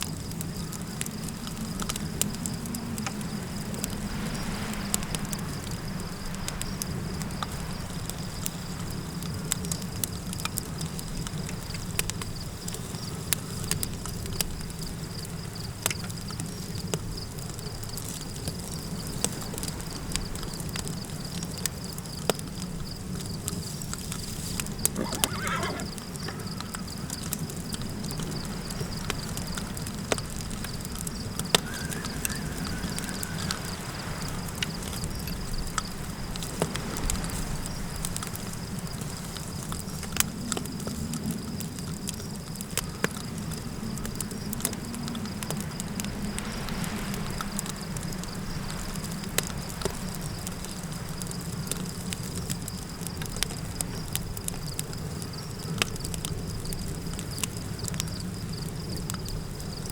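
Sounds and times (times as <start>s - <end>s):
campfire crackling and popping: 0.1s - 59.9s
low wind rumble: 0.5s - 9.4s, 24.3s - 54.1s
horse whinnying: 24.9s - 26.6s.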